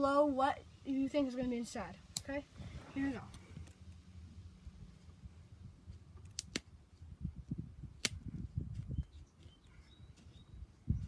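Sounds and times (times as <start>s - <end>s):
knife clicks on leather: 8.0s - 8.2s.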